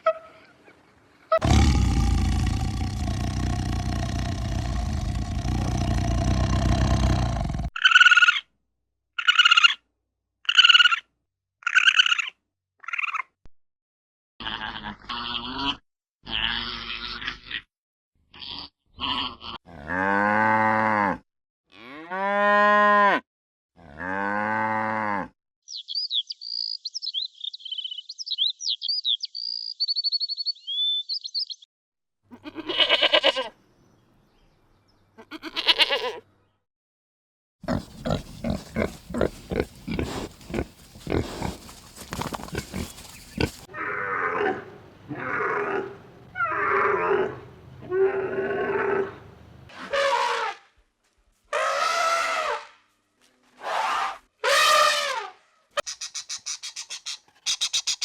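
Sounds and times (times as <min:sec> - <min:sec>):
cow mooing: 0:37.7 - 0:41.7
short animal calls: 0:37.7 - 0:43.7
rapid pulsing call: 0:55.8 - 0:58.0.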